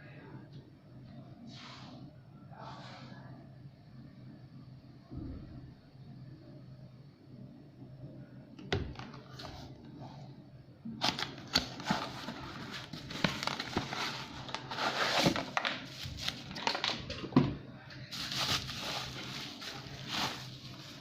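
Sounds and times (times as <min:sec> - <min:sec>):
crinkling and rustling handling: 0:08.7 - 0:10.3, 0:10.9 - 0:21.0.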